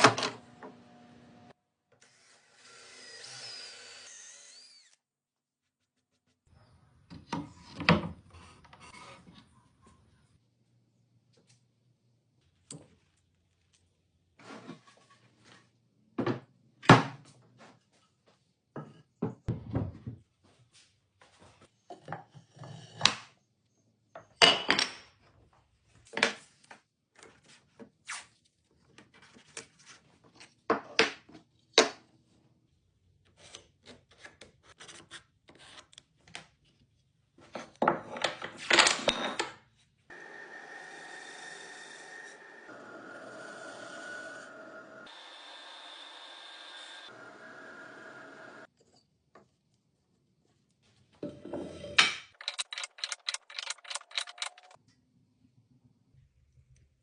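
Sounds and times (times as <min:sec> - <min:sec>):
hard objects knocking and clacking: 0:51.2 - 0:54.8.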